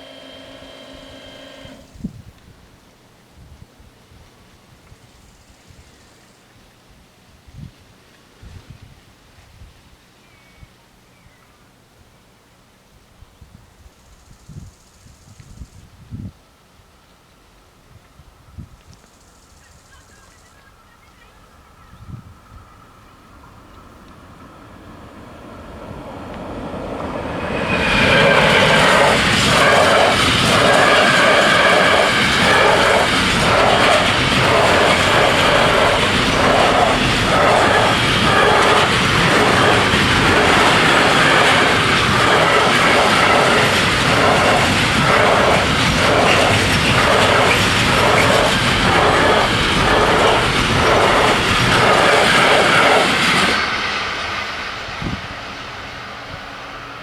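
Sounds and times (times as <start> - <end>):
freight train passing: 0.0 - 2.1, 19.7 - 57.0.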